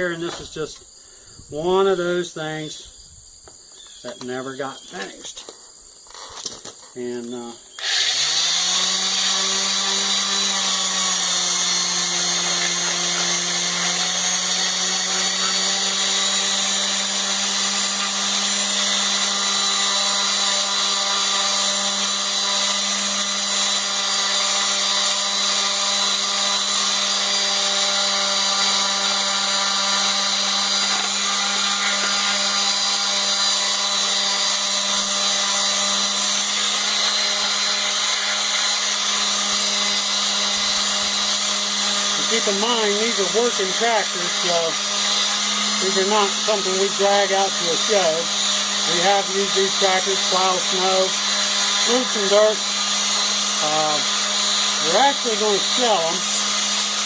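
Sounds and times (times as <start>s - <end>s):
electric sander on steel: 4.1s - 57.0s.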